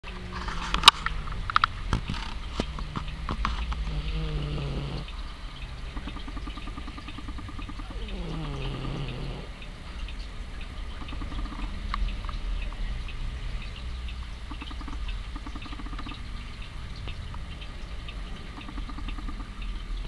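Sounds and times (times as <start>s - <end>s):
sharp clicks: 0.7s - 19.8s
cat snoring: 2.8s - 9.9s.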